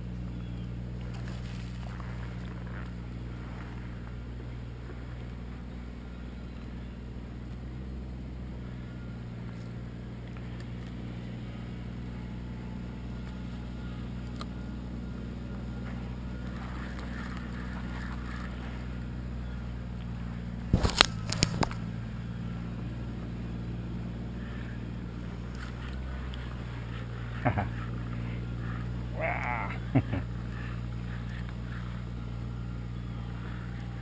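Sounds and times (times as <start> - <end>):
low motor hum: 0.0 - 34.0.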